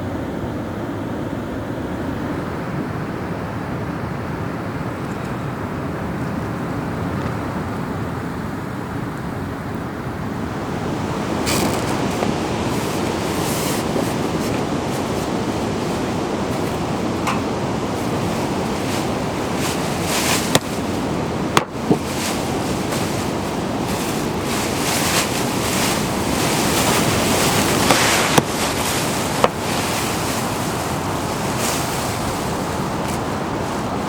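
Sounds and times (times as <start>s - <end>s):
running water rushing: 10.5s - 34.0s.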